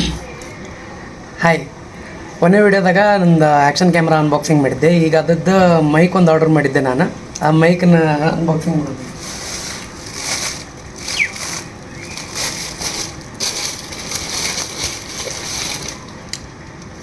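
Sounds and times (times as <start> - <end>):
packaging rustling and crinkling: 9.1 - 16.5.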